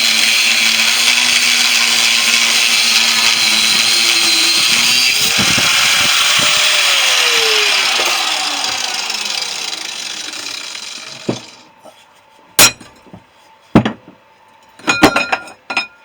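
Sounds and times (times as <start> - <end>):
angle grinder whining: 0.0 - 11.7.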